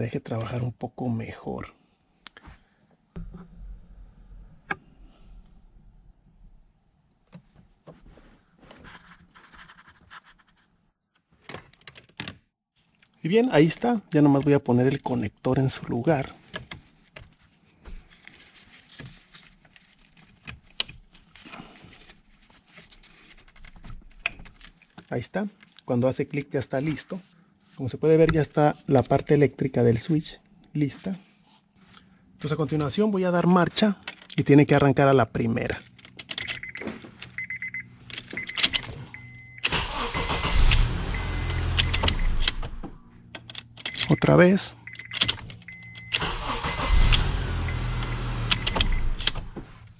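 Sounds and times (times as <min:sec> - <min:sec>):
key clicks: 0:36.0 - 0:39.7, 0:40.6 - 0:46.2, 0:47.1 - 0:49.9
short electronic chimes: 0:37.4 - 0:39.7
car starter cranking: 0:37.4 - 0:49.9
car engine running: 0:38.2 - 0:43.8, 0:44.8 - 0:49.9.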